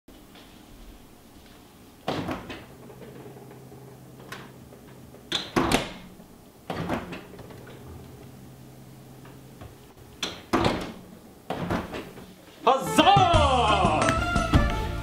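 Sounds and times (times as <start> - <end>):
low steady hum: 0.1 - 12.6
refrigerator door opening and shutting: 2.0 - 12.4.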